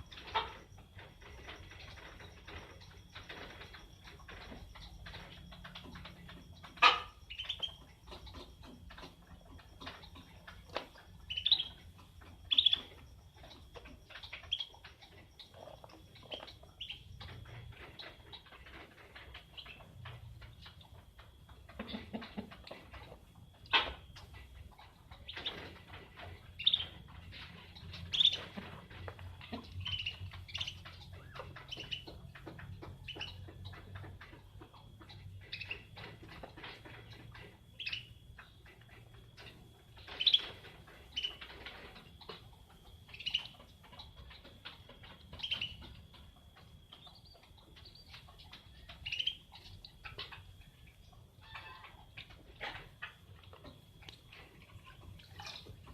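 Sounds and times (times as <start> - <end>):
birds chirping: 0.0 - 55.9.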